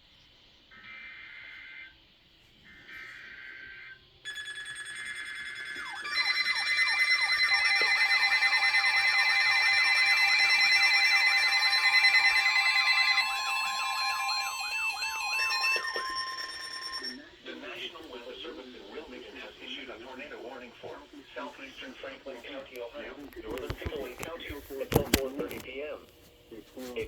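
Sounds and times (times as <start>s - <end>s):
steady alert tones: 4.3s - 18.1s
beeping tones: 4.3s - 18.3s
siren-like alarm sweeping: 4.3s - 19.5s
weather radio warning tone: 5.4s - 25.8s.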